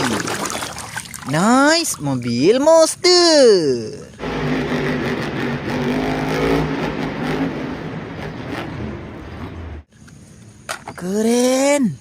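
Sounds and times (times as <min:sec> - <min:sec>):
truck engine rumbling: 0:03.8 - 0:10.6.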